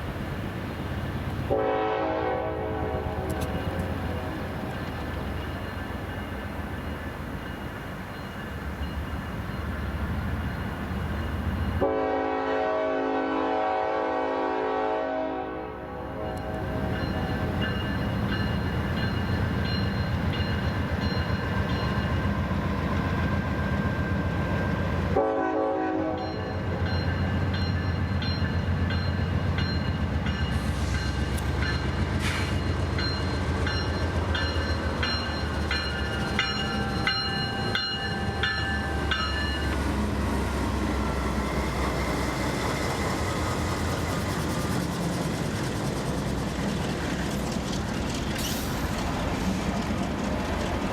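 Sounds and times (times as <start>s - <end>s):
diesel locomotive engine rumble: 0.0s - 50.9s
locomotive horn blast: 1.5s - 4.0s, 11.8s - 17.0s, 25.1s - 26.4s.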